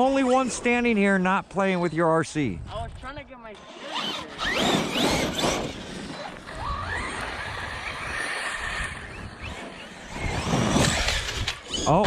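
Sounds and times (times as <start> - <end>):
electric motor whine: 3.5 - 12.0.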